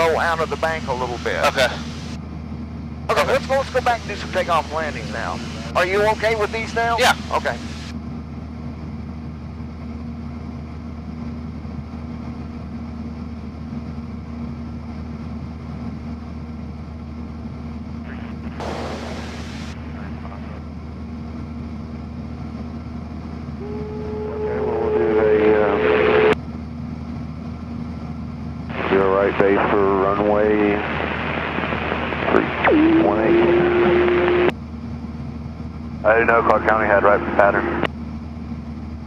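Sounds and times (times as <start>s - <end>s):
radio static: 0.0s - 2.2s, 3.1s - 7.9s, 18.0s - 20.7s, 23.6s - 26.4s, 28.7s - 34.5s, 36.1s - 37.9s
radio transmission tone: 0.0s - 2.2s, 3.1s - 7.9s, 18.0s - 20.7s, 23.6s - 26.4s, 28.7s - 34.5s, 36.1s - 37.9s
propeller plane engine droning: 0.0s - 39.0s.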